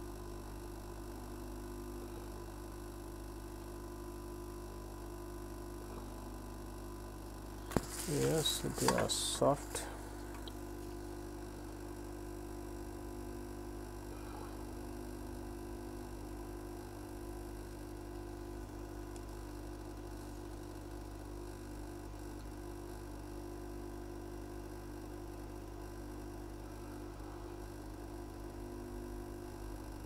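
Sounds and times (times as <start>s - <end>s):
hot air station humming: 7.5s - 11.0s, 14.1s - 14.7s, 26.6s - 27.8s.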